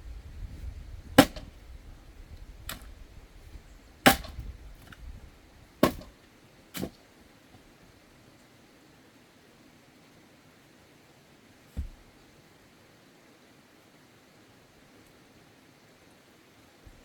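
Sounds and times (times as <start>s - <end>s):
axe splitting firewood: 0.4s - 1.7s, 2.6s - 5.2s, 5.8s - 6.2s, 6.8s - 7.0s, 11.8s - 12.1s
light knocks: 11.8s - 12.1s.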